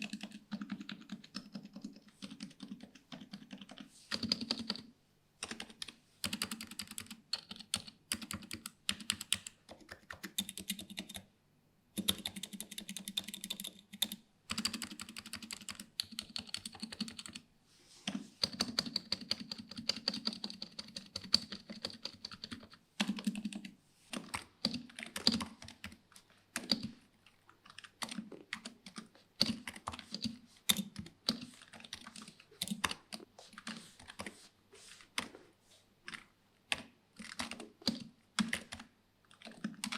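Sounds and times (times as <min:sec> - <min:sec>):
keyboard typing: 0:00.0 - 0:11.3, 0:12.0 - 0:17.4, 0:18.1 - 0:34.4, 0:35.0 - 0:35.4, 0:36.0 - 0:39.9.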